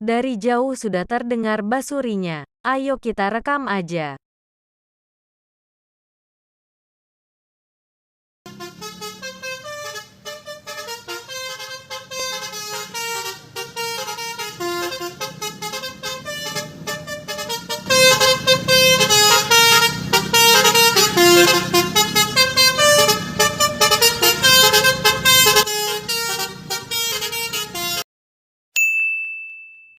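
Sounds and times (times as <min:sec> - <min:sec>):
multi-tone bus horn playing tune: 0:08.5 - 0:28.1.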